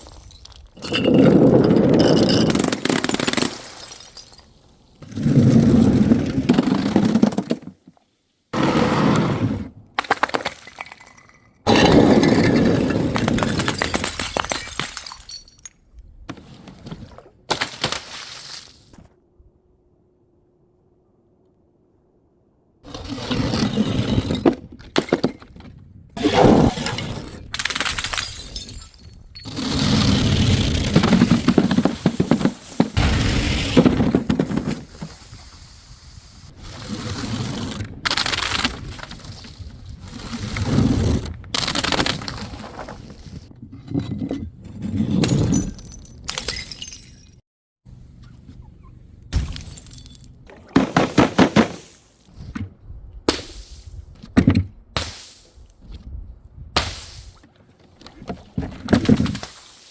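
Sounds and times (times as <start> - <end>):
glass shards tinkling: 0.0 - 1.2, 3.4 - 4.6, 13.7 - 15.8
glass bottles smashing: 0.0 - 4.7, 10.0 - 11.9, 13.2 - 15.8, 27.6 - 29.6, 45.2 - 47.4, 49.4 - 50.3
glass shattering: 2.0 - 4.6, 13.2 - 15.8, 27.6 - 29.6, 45.3 - 47.4, 49.4 - 50.3
broken glass rattling: 13.2 - 15.8, 27.6 - 29.6.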